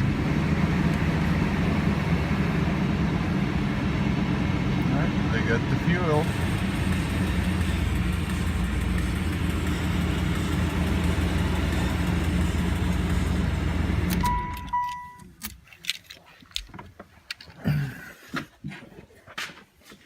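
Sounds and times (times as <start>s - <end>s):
car engine running: 0.0s - 15.2s
short electronic beeps: 14.2s - 15.3s.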